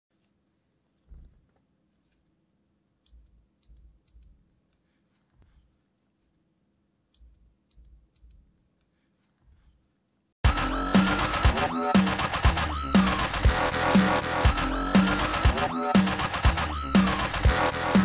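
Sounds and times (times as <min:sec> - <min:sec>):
loud electronic music: 0:10.4 - 0:18.0.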